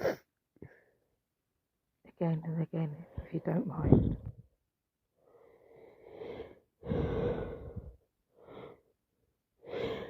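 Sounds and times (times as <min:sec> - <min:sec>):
woman gasping breaths: 0:05.3 - 0:08.8, 0:09.6 - 0:10.0.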